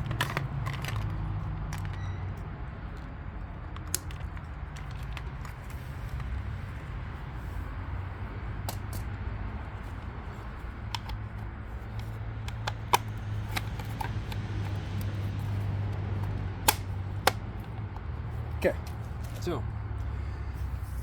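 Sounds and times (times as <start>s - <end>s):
small clicks and taps of tools: 3.7s - 6.3s, 10.8s - 18.1s.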